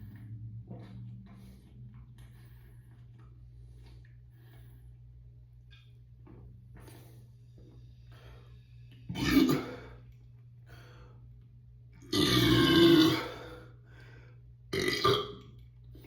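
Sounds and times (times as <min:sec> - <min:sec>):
person burping loudly: 0:09.1 - 0:09.9, 0:12.0 - 0:13.5, 0:14.7 - 0:15.5.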